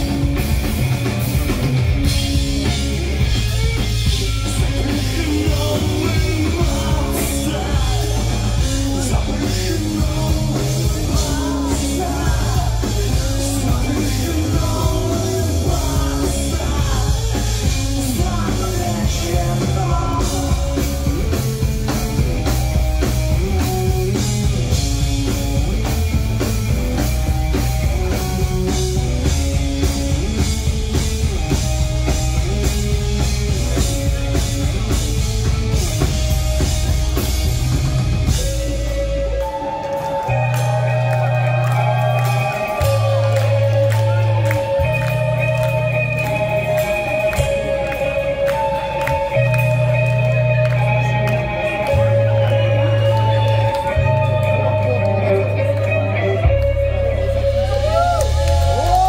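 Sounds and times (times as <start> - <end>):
drum kit: 0.0 - 59.0
electric guitars and bass: 0.0 - 59.0
person singing: 3.8 - 21.5, 38.2 - 59.0.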